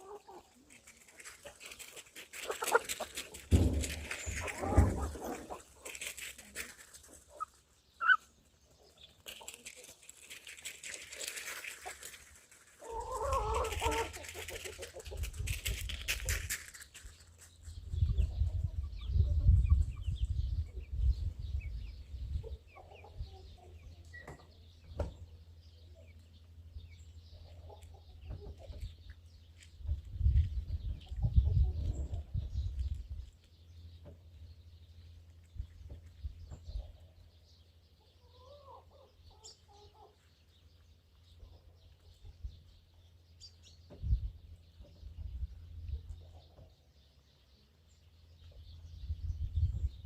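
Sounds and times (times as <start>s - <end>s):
hens clucking: 0.0s - 16.7s.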